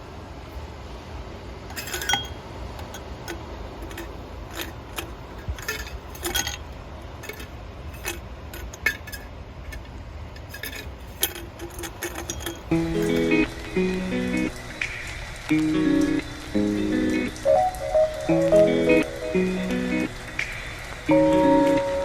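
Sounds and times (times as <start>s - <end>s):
glass and metal items clinking: 1.7s - 13.5s.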